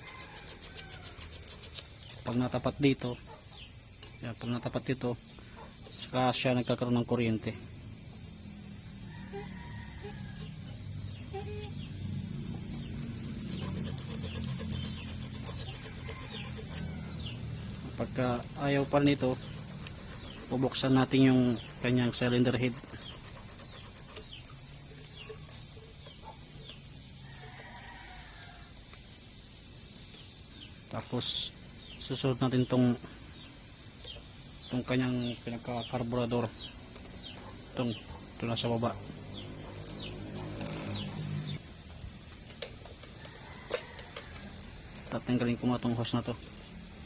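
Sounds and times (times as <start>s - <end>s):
birds chirping: 1.8s - 8.3s, 9.1s - 28.0s, 29.5s - 42.5s
metallic clicks of tools: 41.8s - 45.2s, 46.1s - 46.9s.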